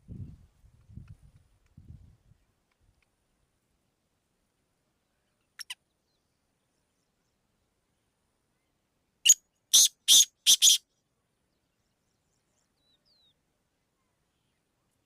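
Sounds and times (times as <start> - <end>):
francolin calling: 9.2 - 10.8.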